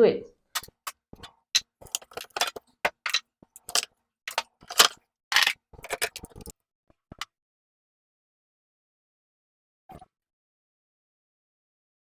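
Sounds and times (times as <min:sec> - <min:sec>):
jars and bottles clinking: 0:01.6 - 0:06.5.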